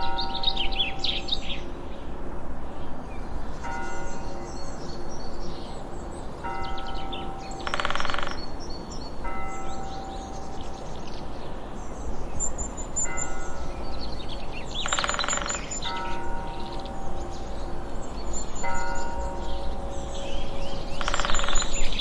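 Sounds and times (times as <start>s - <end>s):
background hiss: 0.0s - 22.0s
birds chirping: 2.8s - 22.0s
ringing bell-like tones: 13.0s - 22.0s
rapid chattering bird calls: 14.8s - 16.0s, 20.9s - 22.0s.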